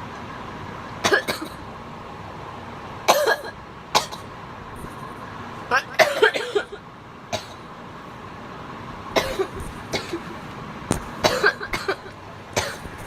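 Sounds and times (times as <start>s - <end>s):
woman coughing: 1.1s - 1.6s, 3.1s - 4.2s, 5.8s - 6.8s, 9.2s - 10.3s, 11.2s - 12.9s.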